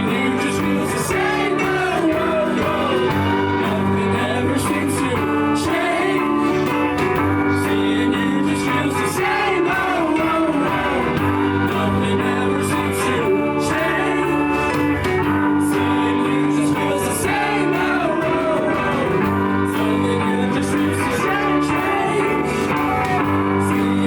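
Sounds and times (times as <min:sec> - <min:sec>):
band playing a song: 0:00.0 - 0:24.0
person singing: 0:00.0 - 0:24.0.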